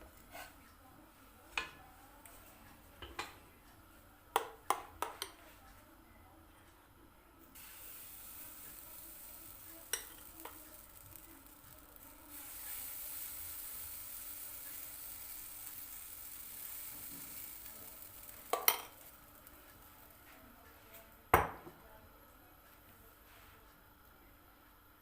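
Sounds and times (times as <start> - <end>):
batter sizzling in a pan: 7.6 - 20.5.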